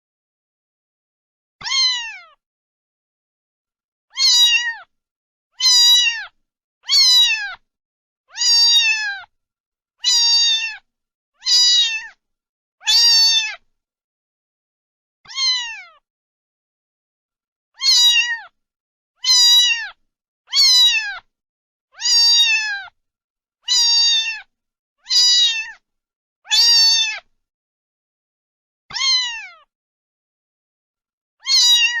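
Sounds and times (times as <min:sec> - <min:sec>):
cat meowing: 0:01.6 - 0:02.4, 0:04.1 - 0:04.9, 0:05.6 - 0:07.6, 0:08.3 - 0:09.3, 0:10.0 - 0:12.2, 0:12.8 - 0:13.6, 0:15.3 - 0:16.0, 0:17.8 - 0:18.6, 0:19.2 - 0:21.3, 0:22.0 - 0:23.0, 0:23.6 - 0:25.8, 0:26.5 - 0:27.3, 0:28.9 - 0:29.7, 0:31.4 - 0:32.0.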